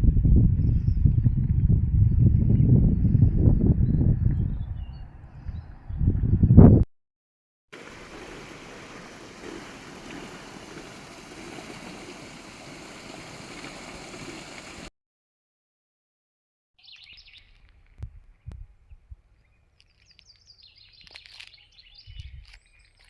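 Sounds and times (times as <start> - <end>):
flowing water rushing: 7.8 - 14.9.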